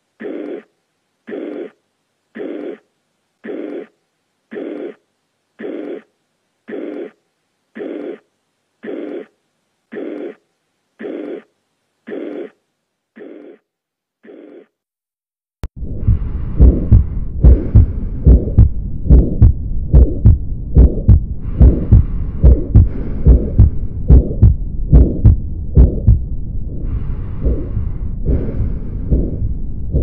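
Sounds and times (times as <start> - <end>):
heartbeat through stethoscope: 15.8 - 30.0.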